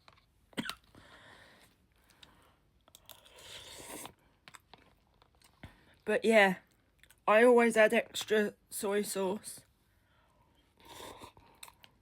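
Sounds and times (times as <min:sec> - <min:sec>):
person chewing: 0:02.0 - 0:05.7, 0:10.8 - 0:12.0
soft breathy slurp: 0:03.1 - 0:04.2, 0:10.8 - 0:11.9.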